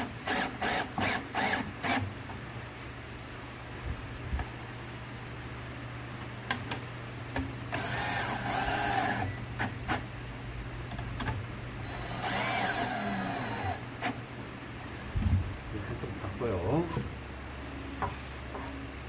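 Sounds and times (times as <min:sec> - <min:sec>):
electric drill whine: 0:00.3 - 0:02.1, 0:07.7 - 0:09.4, 0:11.8 - 0:14.2.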